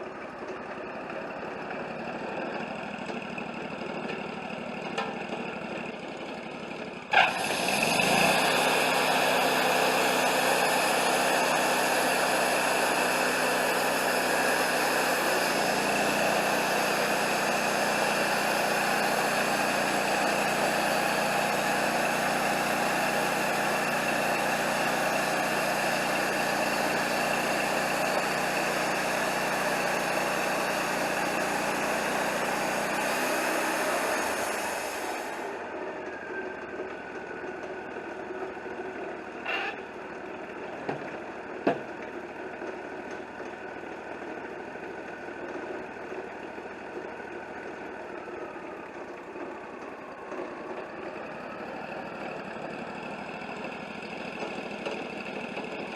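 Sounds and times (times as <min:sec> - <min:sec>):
sawmill engine running: 0:00.0 - 0:55.9
band saw cutting log: 0:07.1 - 0:36.2, 0:39.3 - 0:39.9, 0:49.7 - 0:55.9.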